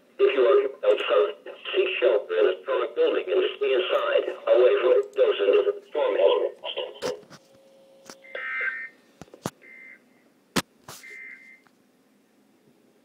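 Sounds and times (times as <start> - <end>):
static clicks: 3.9 - 5.8.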